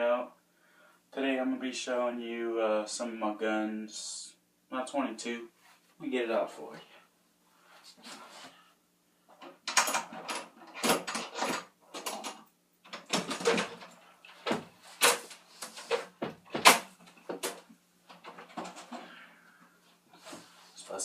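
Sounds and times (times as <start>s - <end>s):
rummaging knocks and rustles: 9.3s - 19.2s.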